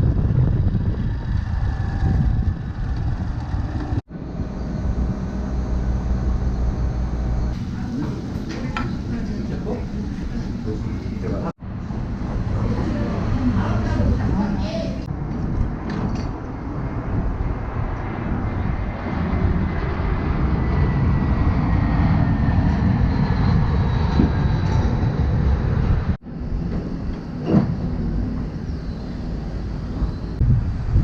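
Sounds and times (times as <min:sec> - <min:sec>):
small motorcycle engine running: 0:00.0 - 0:07.5
wind rumble on microphone: 0:00.0 - 0:31.0.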